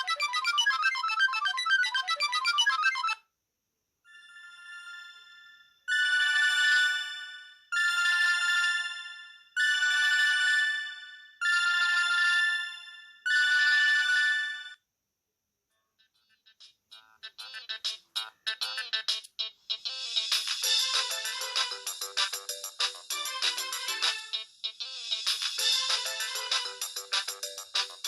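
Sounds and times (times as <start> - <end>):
melodic ringtone: 0.0 - 3.2, 4.1 - 14.8, 16.1 - 28.0
phone trilling rings: 0.0 - 3.2.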